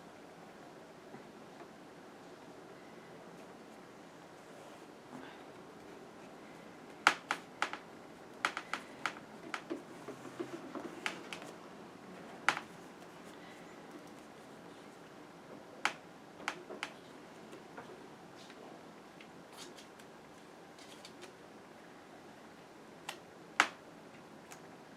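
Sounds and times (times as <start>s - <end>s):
faint paper rustling: 4.4s - 11.6s
sharp clicks and taps: 8.5s - 9.8s.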